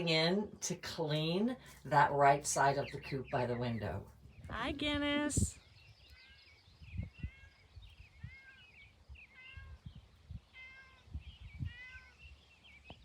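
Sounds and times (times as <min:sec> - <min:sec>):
cat meowing: 0:09.3 - 0:09.9, 0:10.5 - 0:12.2.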